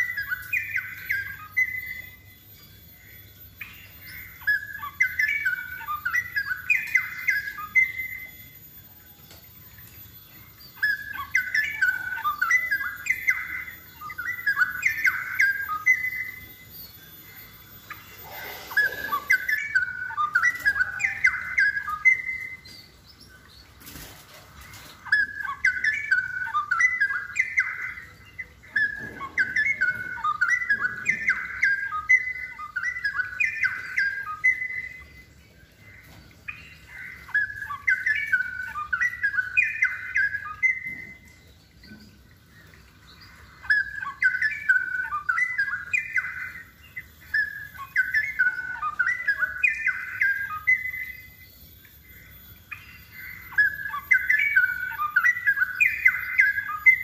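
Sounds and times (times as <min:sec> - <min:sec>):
bird singing warbled phrases: 0:00.0 - 0:57.0.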